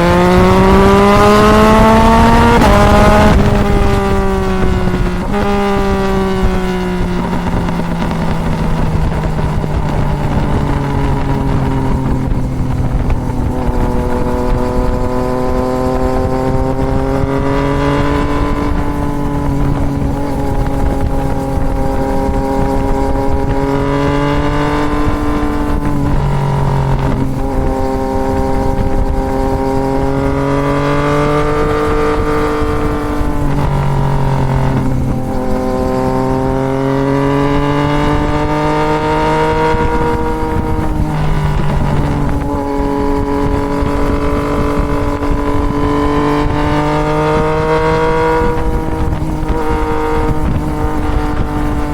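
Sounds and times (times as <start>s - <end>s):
motorcycle engine revving: 0.0s - 51.9s
wind rush: 0.0s - 51.9s.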